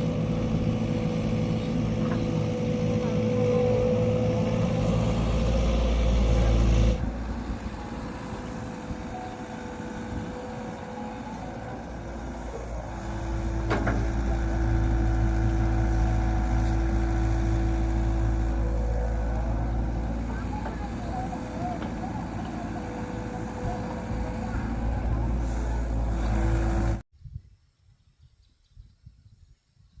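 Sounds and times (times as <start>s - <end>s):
excavator diesel engine rumbling: 0.0s - 27.0s
steady whine: 0.0s - 27.0s.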